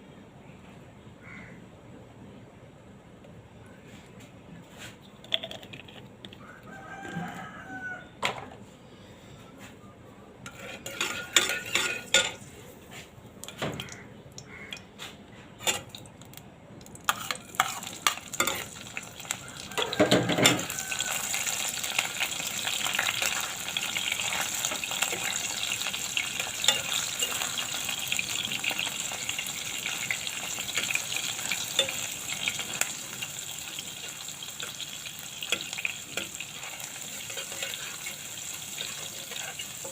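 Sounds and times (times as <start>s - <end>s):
food sizzling in hot oil: 10.5s - 12.4s, 16.9s - 39.9s
utensils clicking against a pan: 10.5s - 12.4s, 13.4s - 14.0s, 16.9s - 39.9s.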